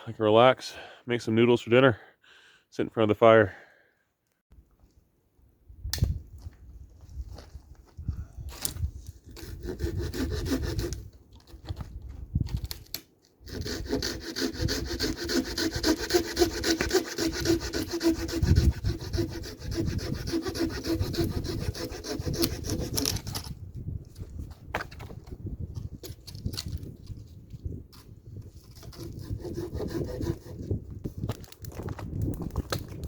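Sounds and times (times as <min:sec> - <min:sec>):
hand saw cutting wood: 0:09.3 - 0:11.5, 0:13.4 - 0:23.6, 0:28.0 - 0:30.8.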